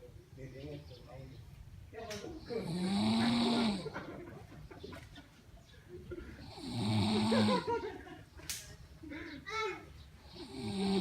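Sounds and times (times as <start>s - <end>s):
person snoring: 2.6s - 3.9s, 6.4s - 7.7s, 10.3s - 11.0s.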